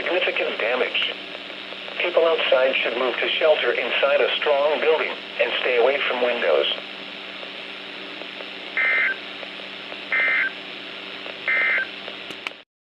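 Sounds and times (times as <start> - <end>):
radio hiss and hum: 0.0 - 12.6
warbling data tone bursts: 8.8 - 9.2, 10.1 - 10.6, 11.5 - 11.9.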